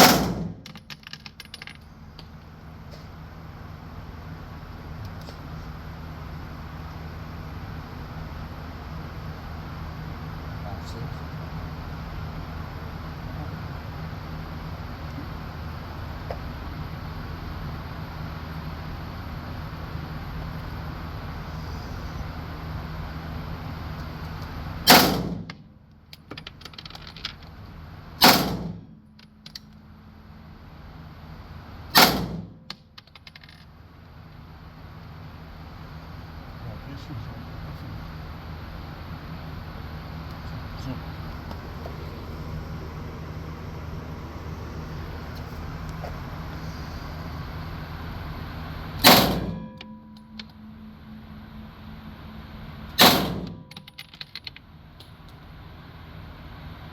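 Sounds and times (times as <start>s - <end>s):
gunshot: 0.0s - 0.6s, 24.9s - 25.5s, 28.2s - 28.8s, 32.0s - 32.6s, 49.0s - 49.6s, 53.0s - 53.6s
gunshots: 0.0s - 0.6s
low background hum: 0.0s - 56.9s.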